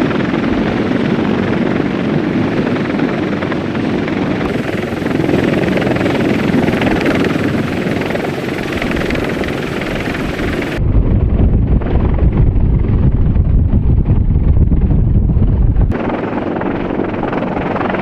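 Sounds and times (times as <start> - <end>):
helicopter rotor and turbine noise: 0.0 - 18.0
wind buffeting microphone: 0.0 - 18.0
deep heavy rumble: 4.4 - 18.0.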